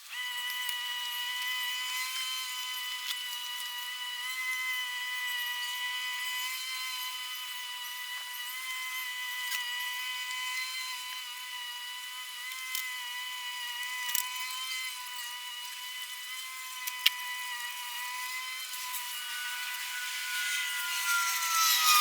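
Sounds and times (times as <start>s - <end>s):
small electric motor whining: 0.0s - 22.0s.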